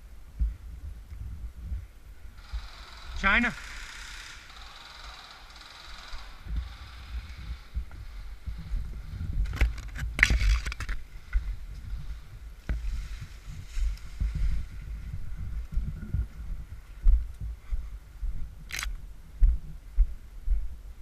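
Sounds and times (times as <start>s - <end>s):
wind rumble on microphone: 0.0s - 3.4s, 6.0s - 21.0s
sharp clicks: 18.7s - 19.0s.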